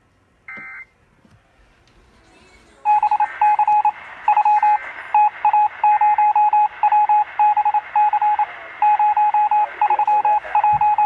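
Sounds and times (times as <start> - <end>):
morse-like radio beeps: 2.9 - 11.0.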